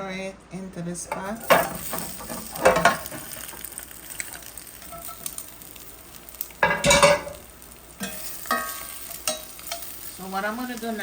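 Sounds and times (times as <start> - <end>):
utensil scraping clatter: 1.1 - 3.7
chicken wings sizzling: 1.1 - 11.0.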